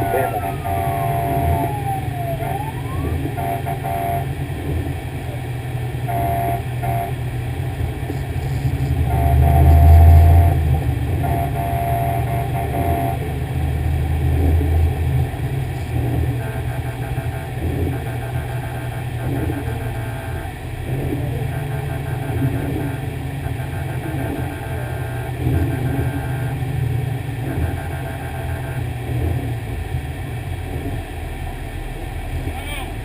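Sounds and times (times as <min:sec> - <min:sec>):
siren winding down: 0:00.0 - 0:04.4, 0:06.1 - 0:07.2, 0:09.0 - 0:13.4, 0:16.4 - 0:26.6
fire engine diesel rumbling: 0:00.0 - 0:33.0
short horn blasts: 0:03.3 - 0:04.4, 0:06.0 - 0:07.2, 0:08.8 - 0:13.3, 0:16.3 - 0:20.5, 0:21.3 - 0:26.6.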